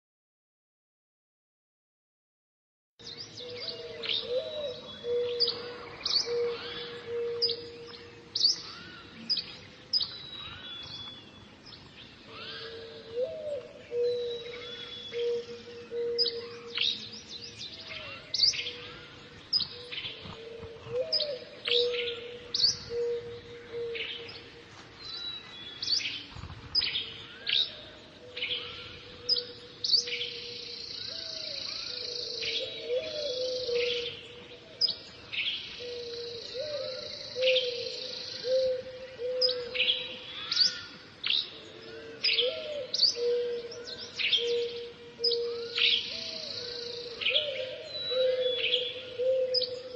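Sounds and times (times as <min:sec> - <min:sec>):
birds chirping: 0:03.0 - 0:49.9
low cooing: 0:03.4 - 0:09.5, 0:12.3 - 0:17.2, 0:17.9 - 0:24.7, 0:26.3 - 0:34.5, 0:35.8 - 0:40.4, 0:41.9 - 0:49.9.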